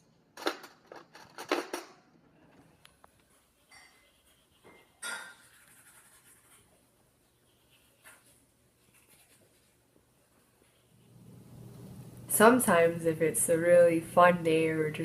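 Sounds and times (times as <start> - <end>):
toothbrush scrubbing: 3.4 - 10.0.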